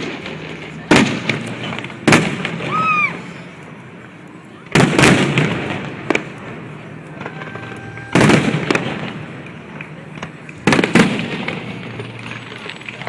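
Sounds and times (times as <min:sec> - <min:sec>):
fireworks shells bursting: 0:04.8 - 0:13.0.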